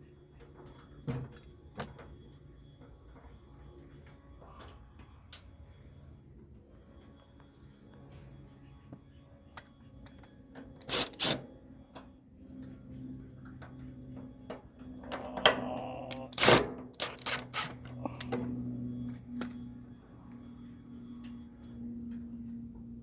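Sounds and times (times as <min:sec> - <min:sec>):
faint steady hum: 0:00.0 - 0:23.0
metallic clicks and knocks: 0:16.3 - 0:18.3.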